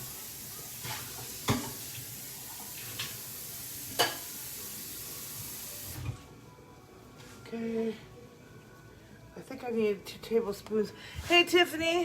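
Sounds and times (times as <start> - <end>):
hot oil sizzling in a pan: 0.0 - 6.0.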